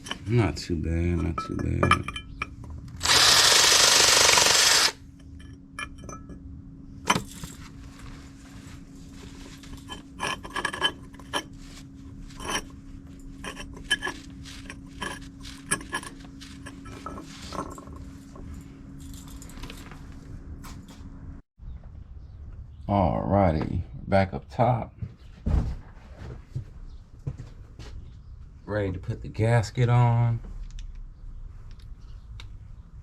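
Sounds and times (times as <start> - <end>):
tools and metal parts clinking: 0.0 - 6.4, 7.0 - 7.7, 9.4 - 20.0
power tool running: 3.0 - 5.0.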